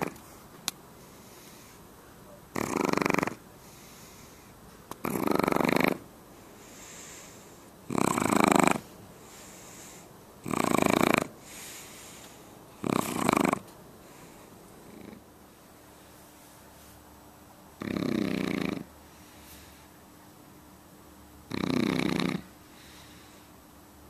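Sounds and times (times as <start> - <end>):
puppy snoring: 0.0 - 0.2, 2.5 - 4.4, 5.0 - 15.3, 17.8 - 18.9, 21.4 - 23.2
soft breaths: 0.0 - 2.4, 3.4 - 5.6, 6.2 - 10.4, 11.2 - 17.2, 18.8 - 20.3, 22.4 - 23.8.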